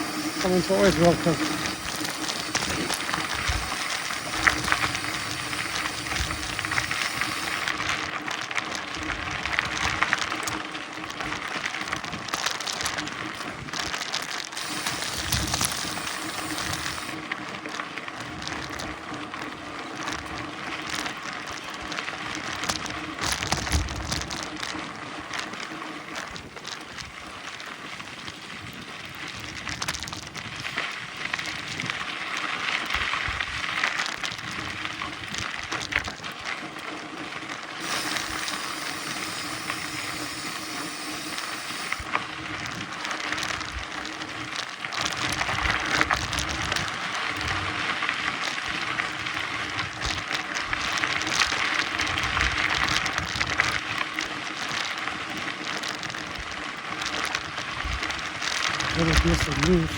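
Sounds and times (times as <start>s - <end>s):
bike rattling and knocking: 0.0s - 19.1s
bike tyres on dirt trail: 0.0s - 59.9s.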